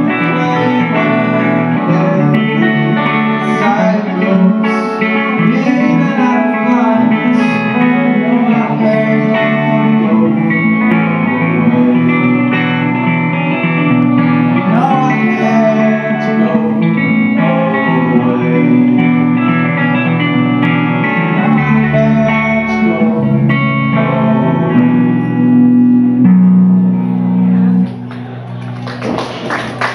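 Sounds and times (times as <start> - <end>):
live guitar band music: 0.0 - 29.9.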